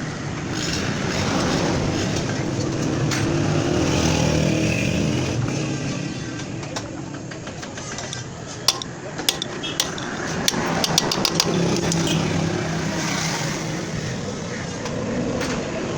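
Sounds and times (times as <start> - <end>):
sharp metallic clicks: 8.0 - 12.2.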